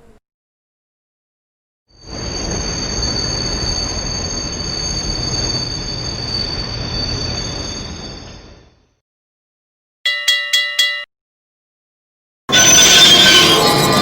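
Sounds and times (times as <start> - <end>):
high-pitched metallic rail squeal: 2.0 - 9.0, 12.5 - 14.0
train rumbling on rails: 2.0 - 9.0.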